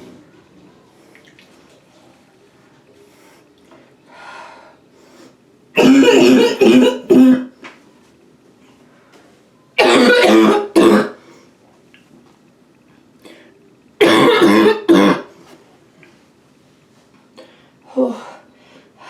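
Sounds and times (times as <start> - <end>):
woman coughing hard: 5.8 - 7.5, 9.8 - 11.2, 14.0 - 15.3.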